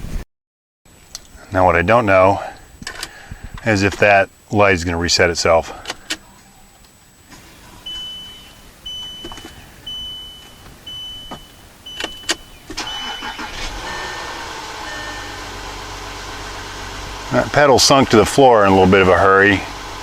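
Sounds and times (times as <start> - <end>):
vehicle warning chime beeping: 7.8 - 15.6
diesel engine starting and idling: 11.8 - 20.0.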